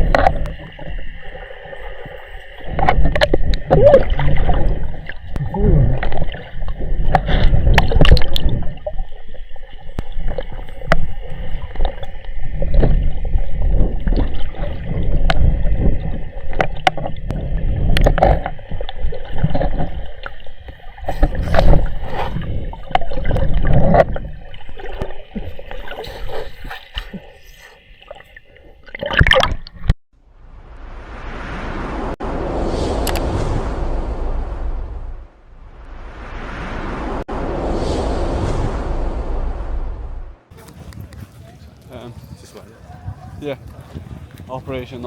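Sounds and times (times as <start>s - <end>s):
knocks and splashes: 0.0s - 30.0s
water gurgling and sloshing: 0.0s - 40.6s.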